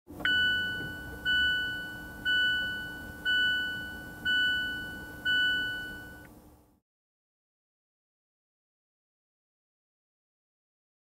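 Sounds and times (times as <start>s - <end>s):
two-note seatbelt warning chime: 0.2s - 6.3s.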